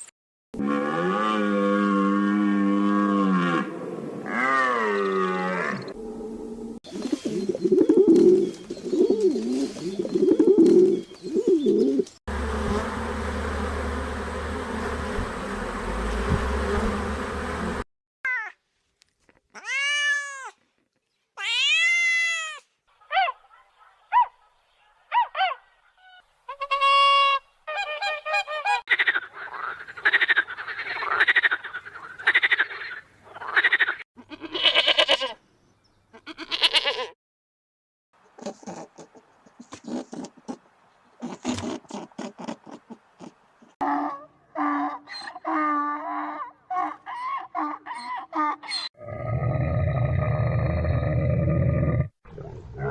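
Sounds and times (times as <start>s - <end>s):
animal growling: 49.0s - 52.9s.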